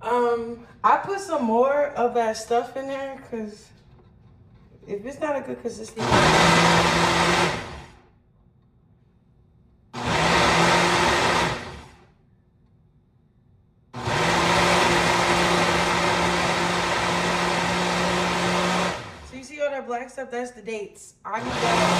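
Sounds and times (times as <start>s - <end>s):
blender grinding frozen fruit: 6.0s - 8.0s, 10.0s - 12.0s, 14.0s - 19.4s, 21.3s - 21.9s.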